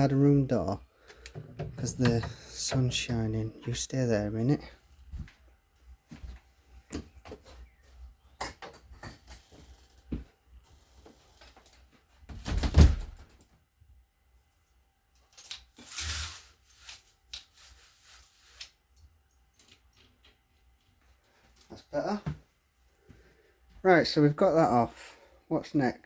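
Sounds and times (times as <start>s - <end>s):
door closing thud: 12.3s - 13.2s.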